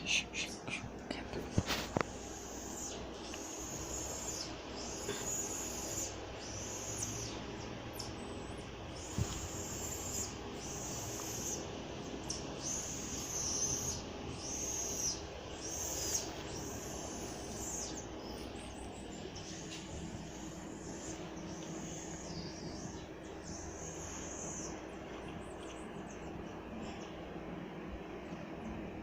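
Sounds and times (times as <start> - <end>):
faint steady hum: 0.0 - 29.0
animal chirping: 2.2 - 19.8.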